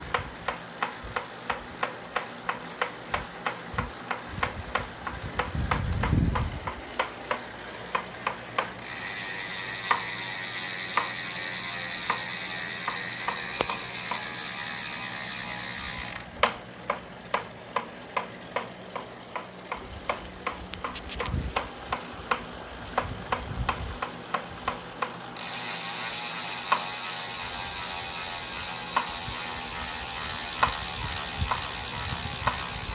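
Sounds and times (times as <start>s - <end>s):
bike trainer knocking: 0.0s - 8.9s, 9.5s - 14.5s, 16.0s - 25.6s, 26.6s - 32.9s
steady whir: 0.0s - 32.9s.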